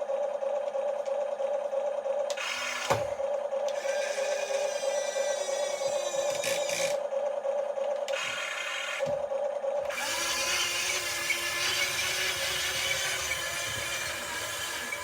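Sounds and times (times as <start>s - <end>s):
small electric motor whirring: 2.3s - 7.0s, 8.1s - 9.1s, 9.9s - 15.0s.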